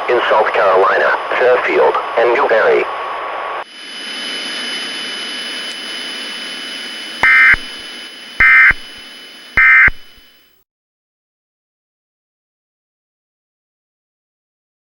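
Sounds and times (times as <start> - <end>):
radio static hiss: 0.0 - 2.9, 3.5 - 10.6
warbling digital data tones: 3.7 - 10.3.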